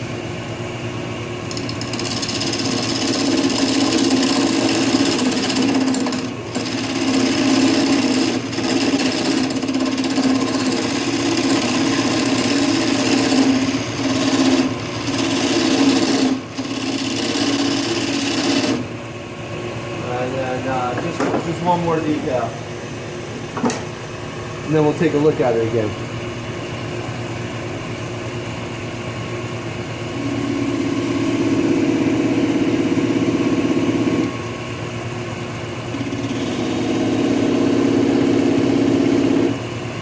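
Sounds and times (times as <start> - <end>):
turning tool chattering on wood: 1.5 - 18.8
lathe motor humming: 1.5 - 19.1, 19.7 - 25.8, 35.9 - 39.6.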